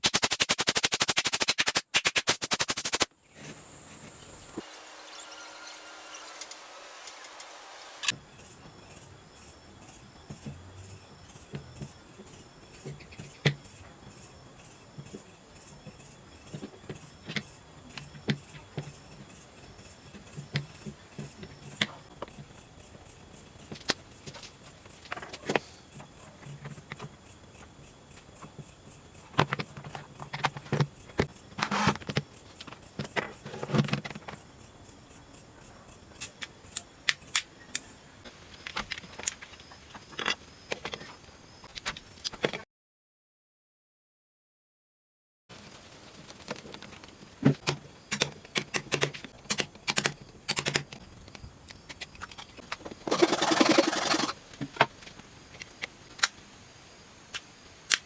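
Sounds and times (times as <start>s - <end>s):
clicks and knocks of tools: 35.9s - 42.6s, 46.3s - 56.4s.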